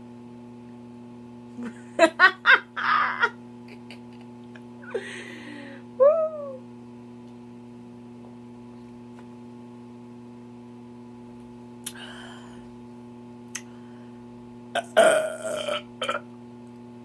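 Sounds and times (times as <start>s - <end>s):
electrical hum: 0.0s - 17.0s
woman burping loudly: 14.8s - 16.2s.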